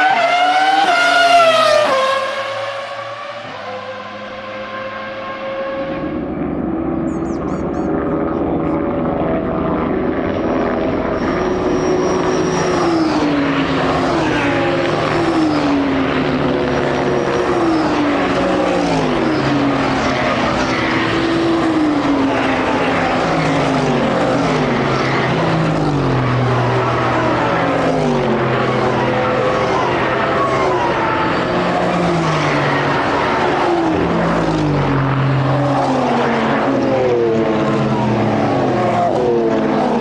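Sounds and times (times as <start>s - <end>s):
racing car engines: 0.0s - 40.0s.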